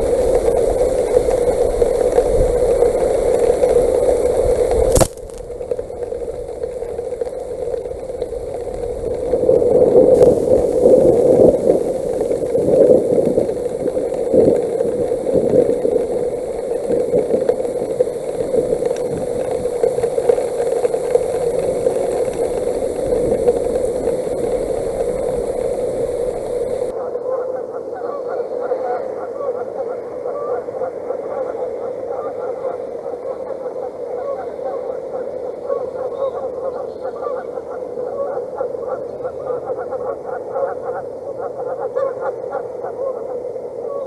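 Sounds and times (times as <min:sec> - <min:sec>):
hail clattering: 0:00.0 - 0:26.9
noisy hum: 0:00.0 - 0:27.0.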